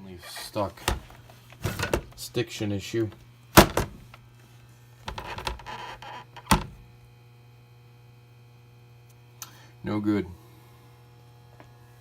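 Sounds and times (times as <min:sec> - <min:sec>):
steady low hum: 0:00.0 - 0:12.0
hard drive knocking and rattling: 0:00.8 - 0:02.2, 0:03.0 - 0:04.2, 0:05.0 - 0:06.9.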